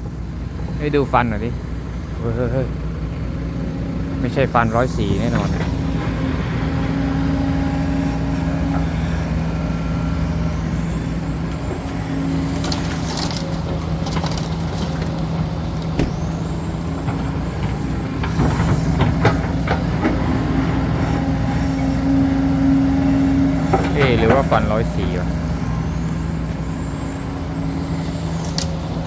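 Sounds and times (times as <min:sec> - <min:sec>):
excavator diesel engine running: 0:00.0 - 0:29.0
high whine: 0:04.2 - 0:13.7.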